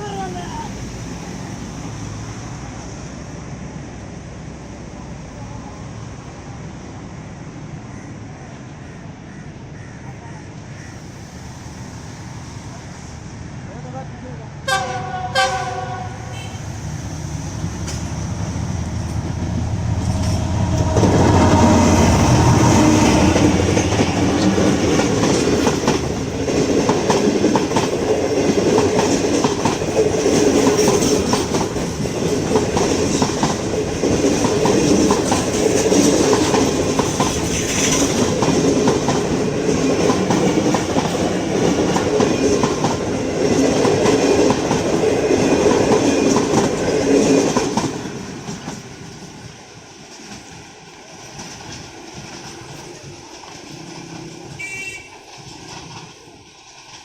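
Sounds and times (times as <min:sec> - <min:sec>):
locomotive engine rumble: 0:15.6 - 0:46.8
train wheels clacking on rails: 0:16.9 - 0:57.0.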